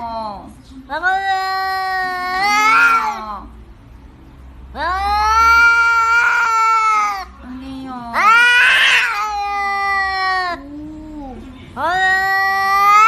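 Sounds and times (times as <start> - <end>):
cat yowling: 1.1 - 3.5, 4.8 - 7.4, 8.1 - 13.0.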